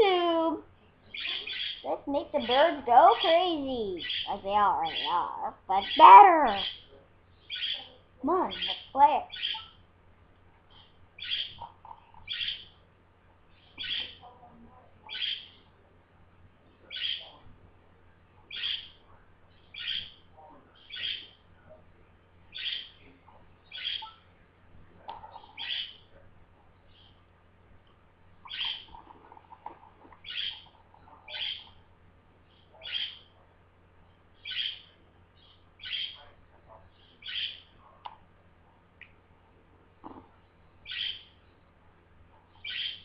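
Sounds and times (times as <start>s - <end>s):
budgerigar calls: 1.1s - 2.5s, 4.0s - 6.8s, 7.5s - 9.8s, 10.7s - 12.8s, 13.7s - 14.2s, 15.0s - 15.6s, 16.9s - 17.4s, 18.5s - 19.0s, 19.7s - 20.2s, 20.8s - 21.3s, 22.5s - 23.0s, 23.7s - 24.2s, 25.4s - 26.0s, 28.4s - 29.0s, 30.2s - 31.7s, 32.8s - 33.3s, 34.4s - 36.2s, 37.2s - 37.7s, 40.8s - 41.3s, 42.6s - 43.0s.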